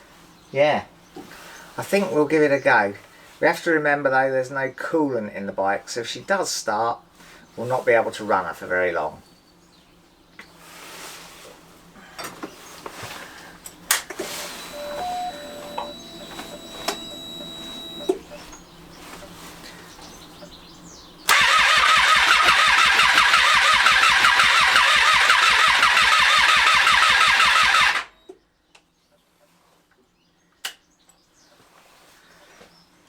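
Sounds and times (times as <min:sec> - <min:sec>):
faint ignition tones and clicks: 0:13.6 - 0:19.3
motorcycle engine cranking on starter: 0:13.9 - 0:18.3, 0:21.3 - 0:28.2.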